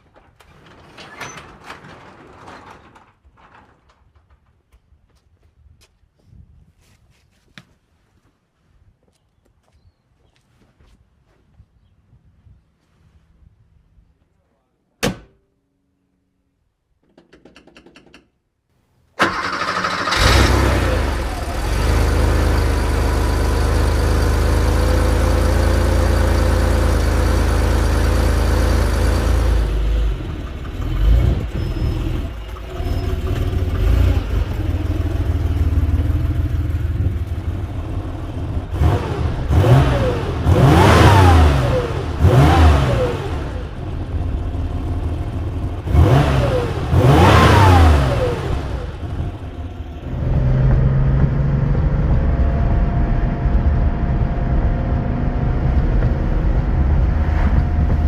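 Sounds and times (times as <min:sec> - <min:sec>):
car engine starting and revving: 0:19.2 - 0:58.0.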